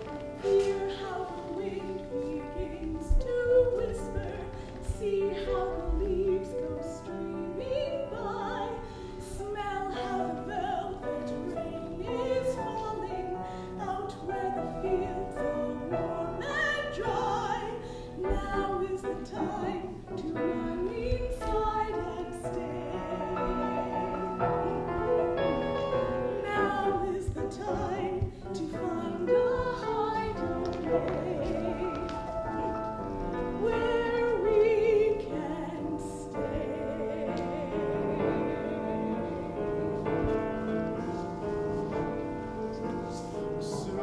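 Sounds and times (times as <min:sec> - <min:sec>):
singing with instrumental music: 0:00.0 - 0:44.0.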